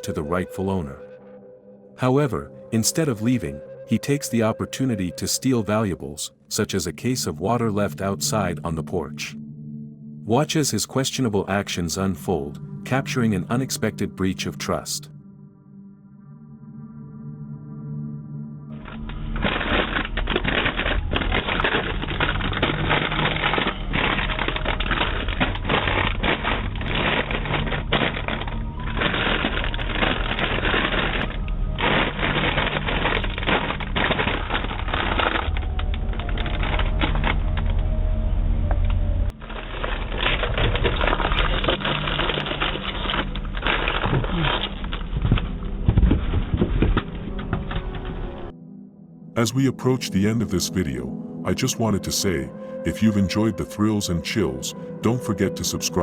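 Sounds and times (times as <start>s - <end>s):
low hum: 18.6s - 48.5s
crackling clicking noise: 18.7s - 48.5s.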